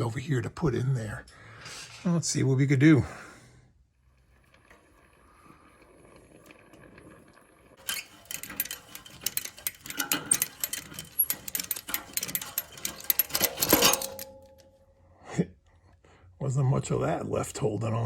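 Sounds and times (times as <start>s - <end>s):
metal tools clicking and rattling: 7.8s - 14.8s.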